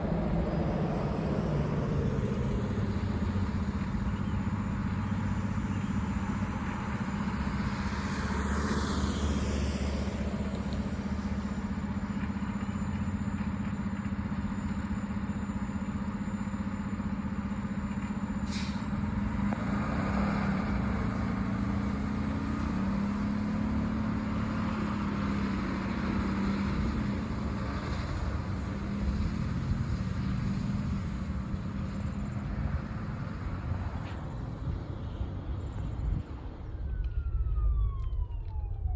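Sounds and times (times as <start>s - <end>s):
large vehicle engine running: 0.0s - 38.9s
street traffic noise: 0.0s - 38.9s.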